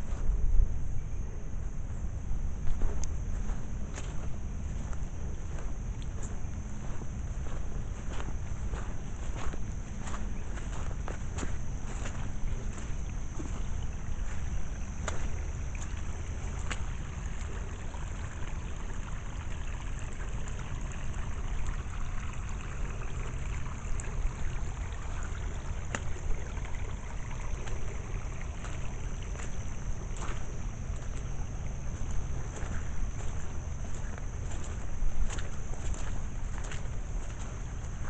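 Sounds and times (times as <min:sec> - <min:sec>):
rainwater running: 0:07.7 - 0:38.0.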